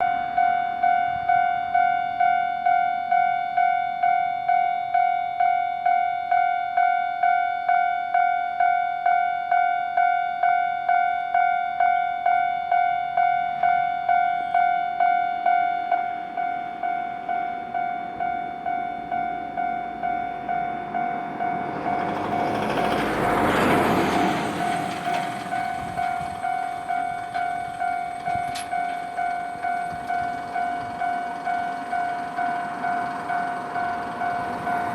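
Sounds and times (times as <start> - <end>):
level crossing alarm dinging: 11.8 - 34.9
train passing: 13.1 - 34.9.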